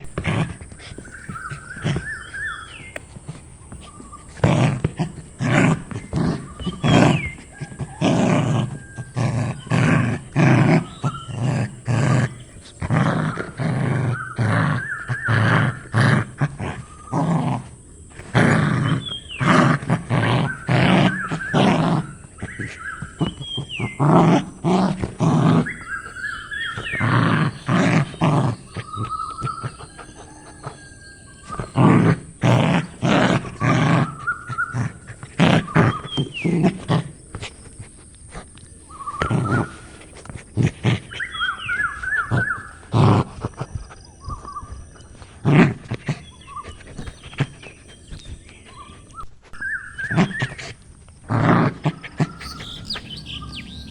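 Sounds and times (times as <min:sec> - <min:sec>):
animal's loud low calls: 0:00.0 - 0:37.5, 0:50.0 - 0:53.9
bird chirps: 0:00.7 - 0:12.8, 0:18.1 - 0:34.8, 0:51.5 - 0:53.9.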